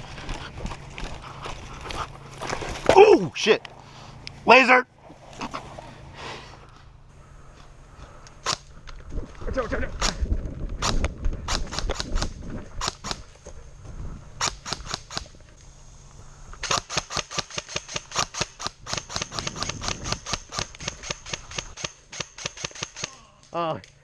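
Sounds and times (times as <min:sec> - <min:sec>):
airsoft guns firing: 0:10.8 - 0:13.2, 0:16.6 - 0:23.2.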